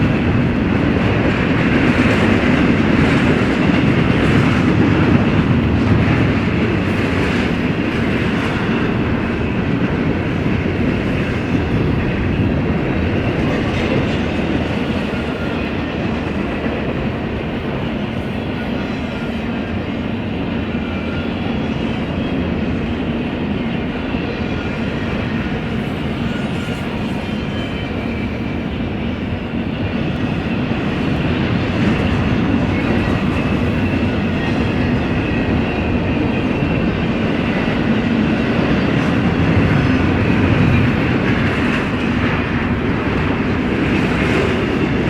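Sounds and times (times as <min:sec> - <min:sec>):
freight train wheels rumbling: 0:00.0 - 0:45.0.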